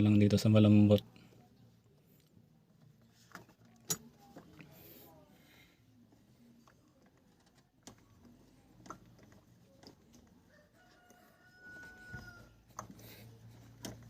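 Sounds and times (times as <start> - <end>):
faint clicks and knocks: 6.0 - 14.0
distant rooster crowing: 10.5 - 12.7.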